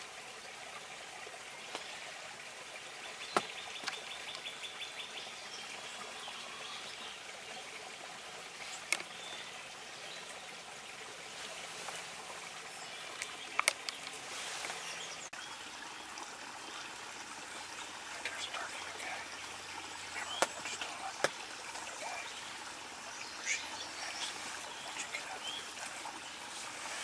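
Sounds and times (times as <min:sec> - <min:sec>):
steady outdoor hiss: 0:00.0 - 0:27.0.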